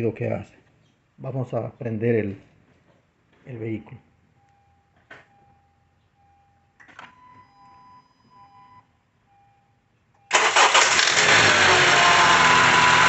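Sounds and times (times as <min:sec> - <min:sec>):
faint beeping tones: 0:04.4 - 0:10.3
car engine starting and running: 0:10.3 - 0:13.0.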